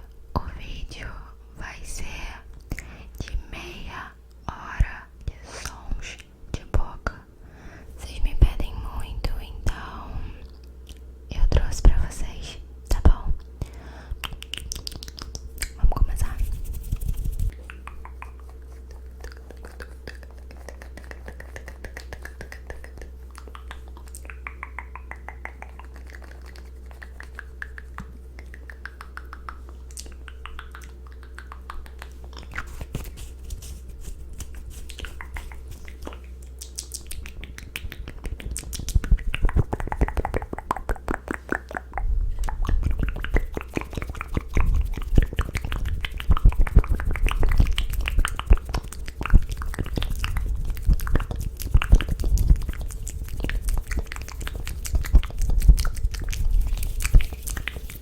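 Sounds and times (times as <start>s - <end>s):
wet mouth clicks and smacks: 14.2s - 58.0s.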